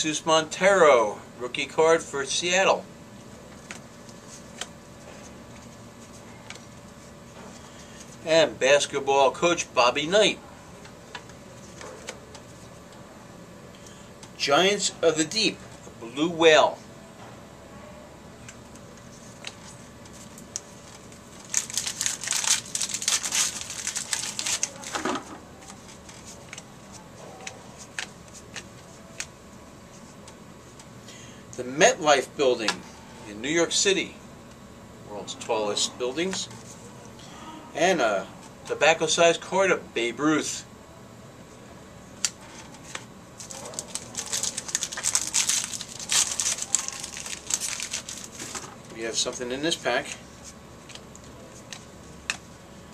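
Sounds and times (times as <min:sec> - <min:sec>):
card pack wrapper crinkling: 0:19.4 - 0:25.0, 0:42.9 - 0:48.6.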